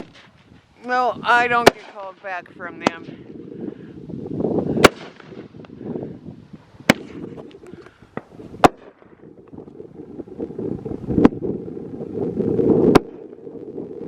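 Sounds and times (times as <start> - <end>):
fireworks banging: 0.0 - 3.2, 4.7 - 5.8, 6.8 - 9.3
faint firework pops: 4.8 - 5.8.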